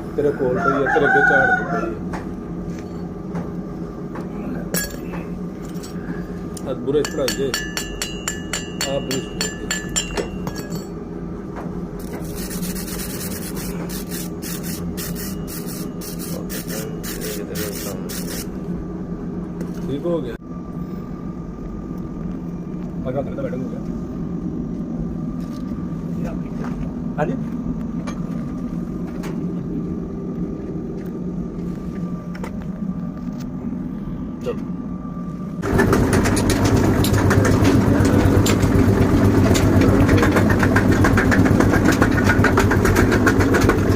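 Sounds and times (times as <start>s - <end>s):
machine hum: 0.0s - 43.9s
hand tool rasping on metal: 12.1s - 18.5s.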